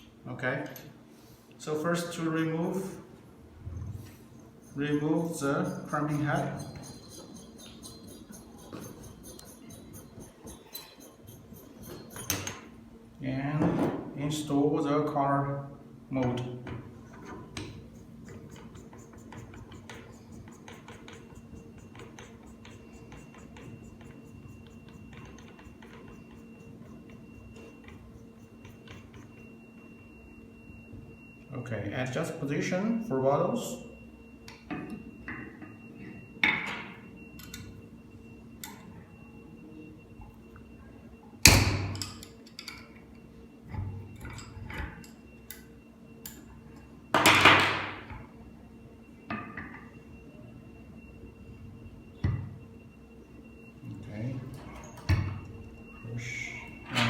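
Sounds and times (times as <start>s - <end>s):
steady hum: 0.0s - 57.0s.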